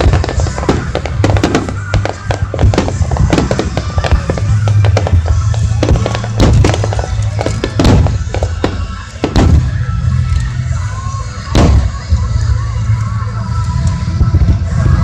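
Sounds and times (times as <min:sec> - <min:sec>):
heavy firework booms: 0:00.0 - 0:10.0, 0:11.5 - 0:12.4
fireworks bangs and crackles: 0:00.0 - 0:15.0
music: 0:00.0 - 0:15.0.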